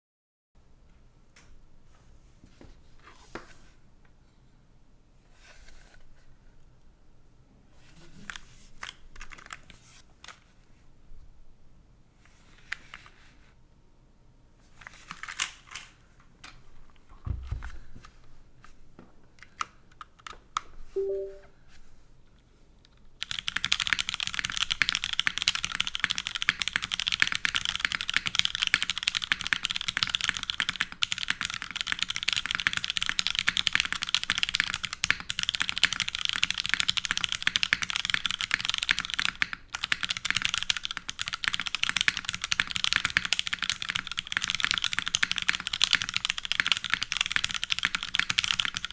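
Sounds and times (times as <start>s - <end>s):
mechanical keyboard typing: 23.2s - 48.9s.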